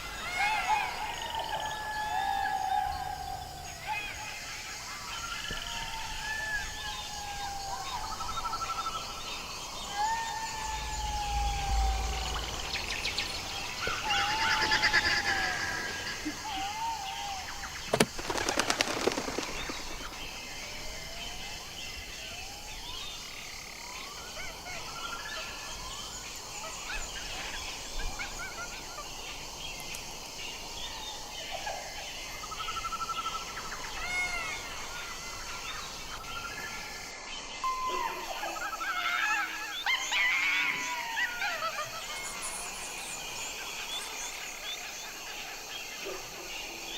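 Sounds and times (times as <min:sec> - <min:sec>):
jackals howling: 0:00.0 - 0:18.3, 0:37.7 - 0:46.9
rapidly pulsed animal calls: 0:00.1 - 0:23.0.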